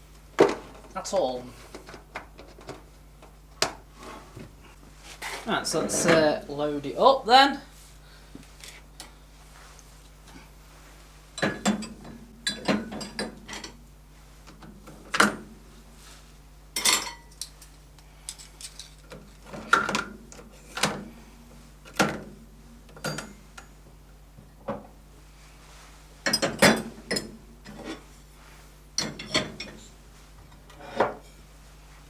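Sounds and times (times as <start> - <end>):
faint steady hum: 0.0 - 32.0
dishes clinking and clattering: 11.4 - 13.8, 16.8 - 17.4, 23.0 - 23.4, 26.2 - 28.0, 29.0 - 29.9.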